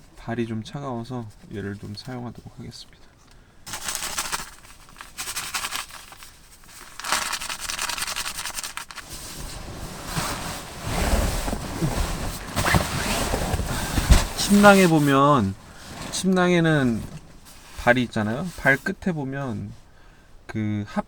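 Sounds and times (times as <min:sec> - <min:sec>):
rustling and handling: 0:01.0 - 0:19.8
plastic wrapper tearing and crinkling: 0:03.7 - 0:09.1.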